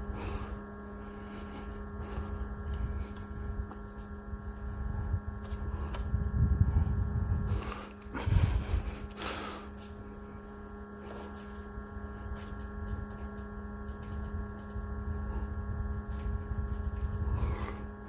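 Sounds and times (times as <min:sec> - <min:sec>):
fan motor humming: 0:00.0 - 0:18.0.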